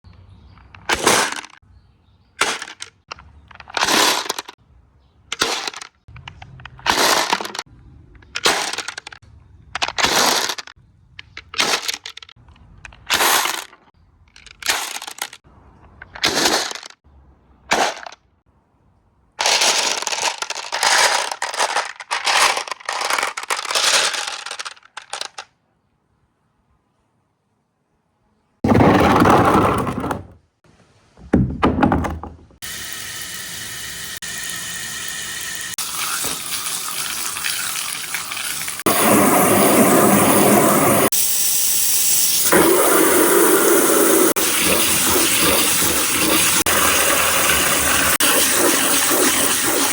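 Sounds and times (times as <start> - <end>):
marbles clattering through a run: 19.4 - 25.4, 32.7 - 39.8.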